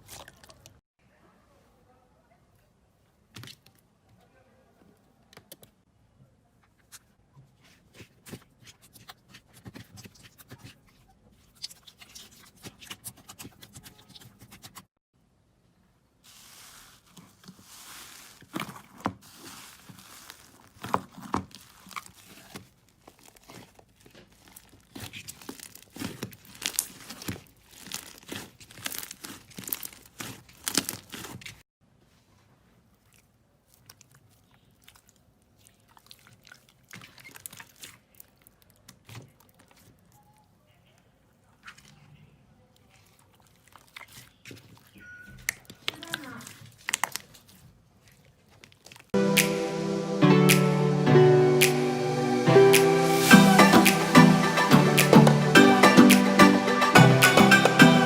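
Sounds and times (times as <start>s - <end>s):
slime crackling and popping: 17.8s - 31.6s, 33.6s - 40.3s, 45.5s - 47.6s.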